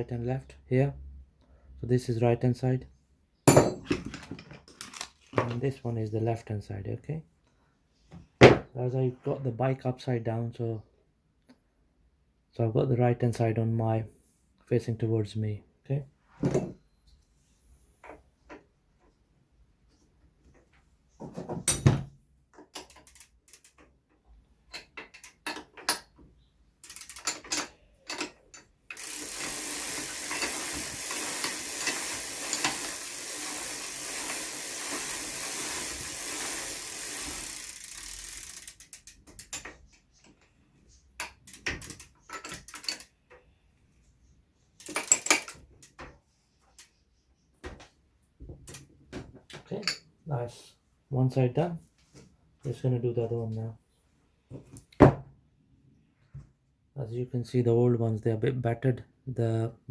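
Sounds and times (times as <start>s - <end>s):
rapid ratcheting clatter: 26.8s - 39.7s, 44.8s - 45.9s.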